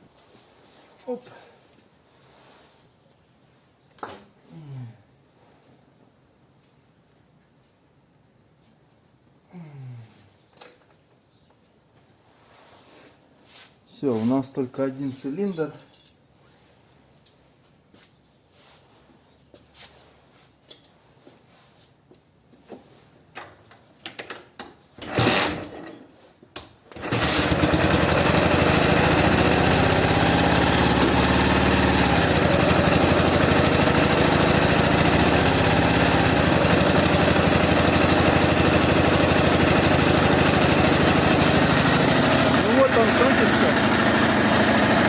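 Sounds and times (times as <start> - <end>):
motorcycle engine running: 27.0 - 45.0.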